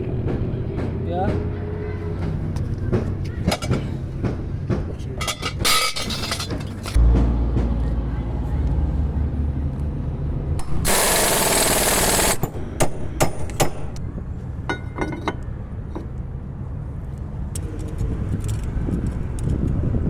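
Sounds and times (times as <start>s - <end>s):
power tool burst: 10.6s - 13.0s
sharp ringing metal knocks: 12.4s - 14.0s.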